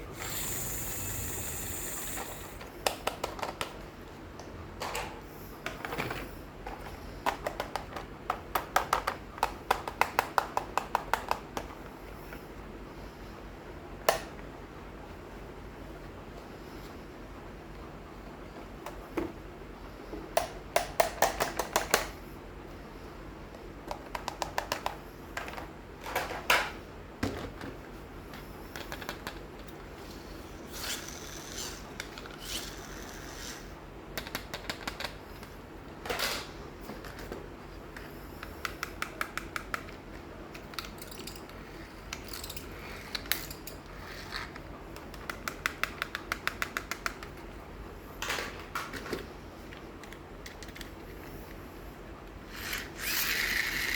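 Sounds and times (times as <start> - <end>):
plastic toys clicking and rattling: 40.5 - 47.2, 52.5 - 53.9
toys rustling: 52.5 - 53.9.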